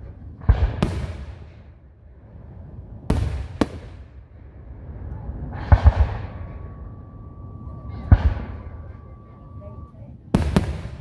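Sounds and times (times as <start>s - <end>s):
fireworks banging: 0.0s - 11.0s
high whistle: 5.1s - 11.0s.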